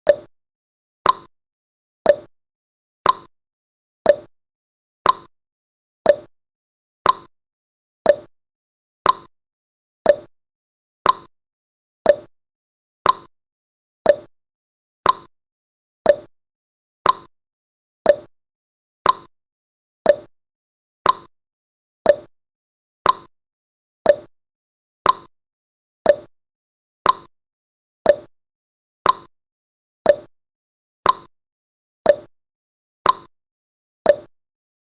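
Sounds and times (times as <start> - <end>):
timer ticking clicks: 0.0 - 0.3, 1.0 - 1.3, 2.0 - 2.3, 3.0 - 3.3, 4.0 - 4.3, 5.0 - 5.3, 6.0 - 6.3, 7.0 - 7.3, 8.0 - 8.3, 9.0 - 9.3, 10.0 - 10.3, 11.0 - 11.3, 12.0 - 12.3, 13.0 - 13.3, 14.0 - 14.3, 15.0 - 15.3, 16.0 - 16.3, 17.0 - 17.3, 18.0 - 18.4, 19.0 - 19.3, 20.0 - 20.3, 21.0 - 21.3, 22.0 - 22.3, 23.0 - 23.3, 24.0 - 24.3, 25.0 - 25.3, 26.0 - 26.3, 27.0 - 27.3, 28.0 - 28.4, 29.0 - 29.3, 30.0 - 30.4, 31.0 - 31.3, 32.0 - 32.4, 33.0 - 33.3, 34.0 - 34.4.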